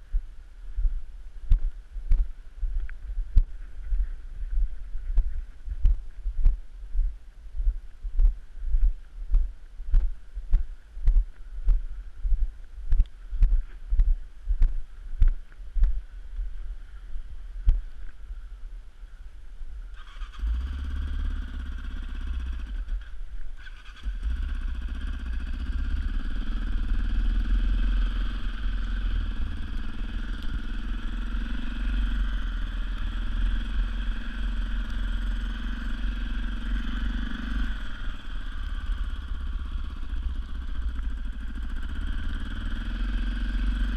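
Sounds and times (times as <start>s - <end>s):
regular low thumps: 0.0s - 20.0s, 24.4s - 43.9s
atv engine running: 20.0s - 43.9s.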